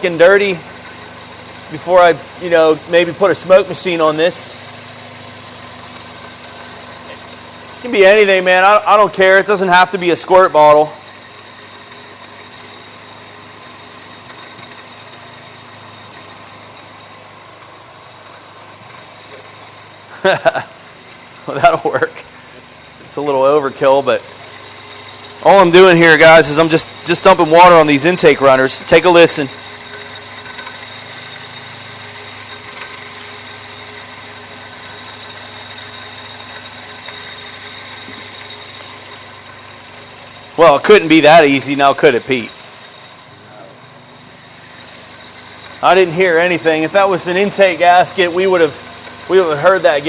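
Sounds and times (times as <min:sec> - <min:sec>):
car engine idling: 0:00.0 - 0:50.0.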